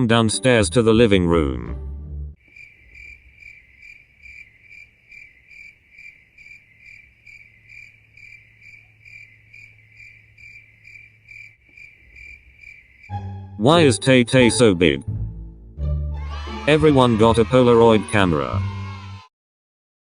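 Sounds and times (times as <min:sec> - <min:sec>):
crickets chirping: 0:02.4 - 0:13.2.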